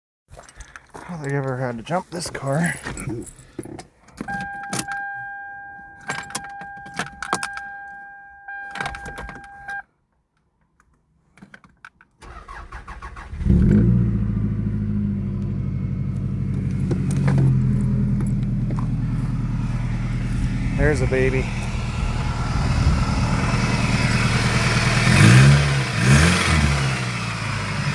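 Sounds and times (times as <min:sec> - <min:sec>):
two-tone warning chime: 0:04.3 - 0:09.8
car starter cranking: 0:12.2 - 0:14.0
car engine running: 0:13.3 - 0:27.9.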